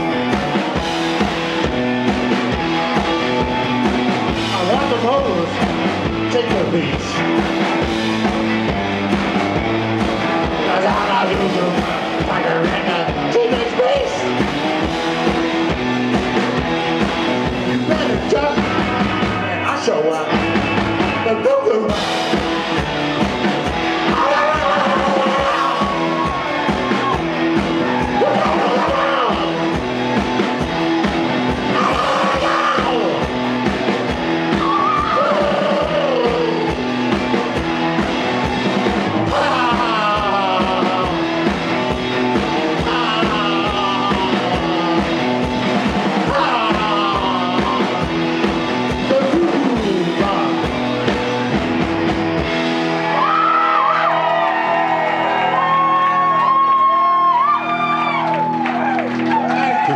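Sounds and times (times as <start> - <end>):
drum beat: 0.0 - 19.6, 21.9 - 53.3
electric guitar: 0.0 - 59.9
live rock band playing: 0.0 - 59.9
person yelling vocals: 24.1 - 27.2, 27.8 - 29.6, 31.7 - 33.2, 34.6 - 36.8, 39.3 - 41.4, 46.2 - 48.0.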